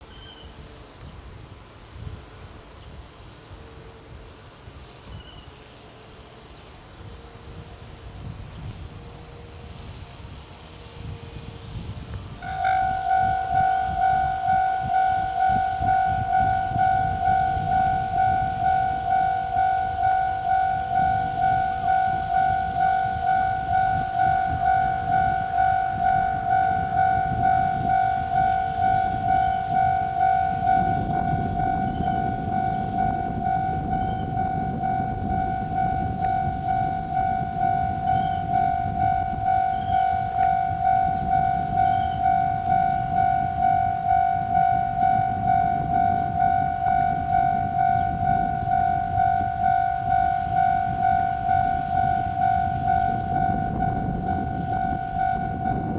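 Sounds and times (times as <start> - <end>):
train rumbling on rails: 0.0 - 55.9
level crossing bell dinging: 12.6 - 55.9.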